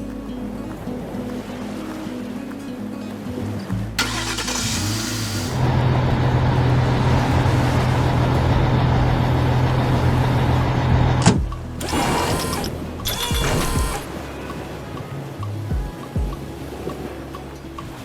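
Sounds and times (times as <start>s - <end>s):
background music: 0.0s - 18.0s
heavy vehicle engine humming: 4.0s - 14.8s.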